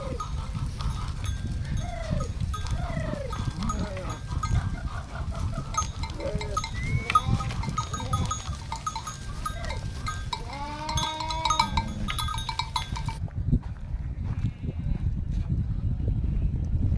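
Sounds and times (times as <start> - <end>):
small bells clinking: 0.0 - 4.8, 5.6 - 13.2
steady low rumble: 0.0 - 16.9
sheep bleating: 5.8 - 8.5, 9.4 - 12.2.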